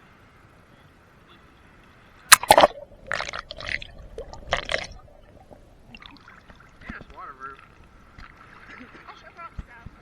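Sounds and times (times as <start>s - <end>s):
seawater splashing: 2.3s - 9.1s.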